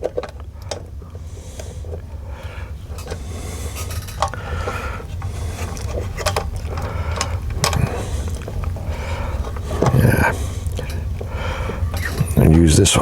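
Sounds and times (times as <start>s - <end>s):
steady low hum: 0.0s - 13.0s
clicks and scrapes of hand tools: 2.9s - 12.4s.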